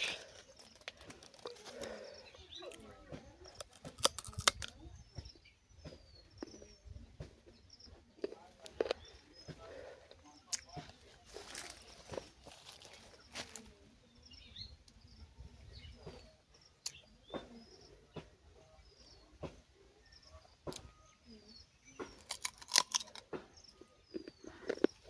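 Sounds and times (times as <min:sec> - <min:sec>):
small birds chirping: 0:00.0 - 0:25.0.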